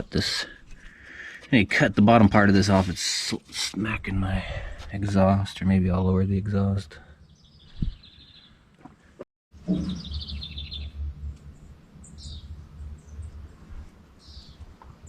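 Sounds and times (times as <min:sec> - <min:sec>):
birds chirping: 0:06.8 - 0:15.0
low steady hum: 0:09.6 - 0:15.0.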